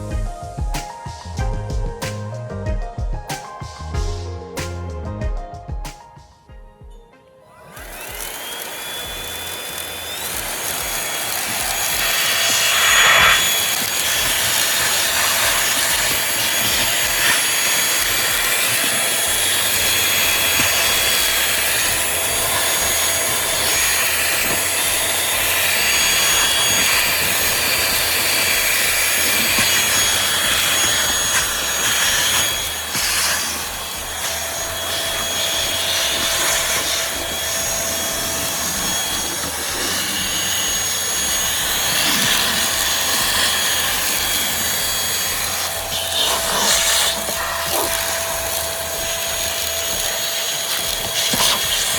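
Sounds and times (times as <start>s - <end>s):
vacuum cleaner running: 0.0s - 4.3s, 7.5s - 51.9s
vacuum rubbing and scraping surface: 7.5s - 51.9s.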